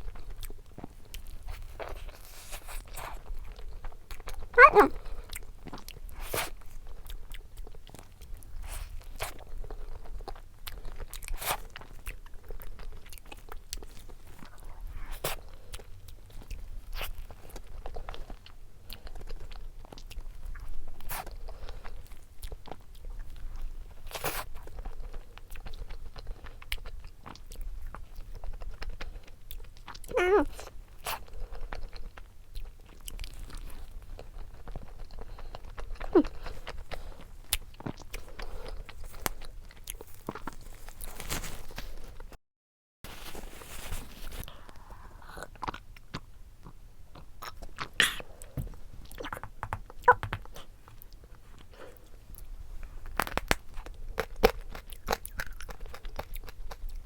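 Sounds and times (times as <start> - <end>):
person chewing doughnut: 0.0 - 42.3, 43.2 - 57.0
mouth clicks and smacks: 47.4 - 51.2.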